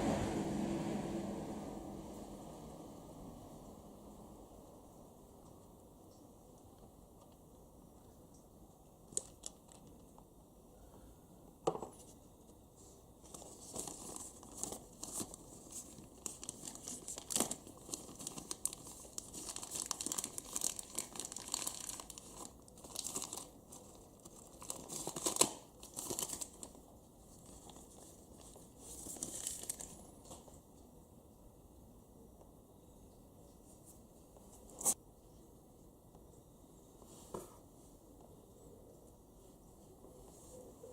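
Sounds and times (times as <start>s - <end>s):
rustling and crinkling handling: 11.8s - 30.8s.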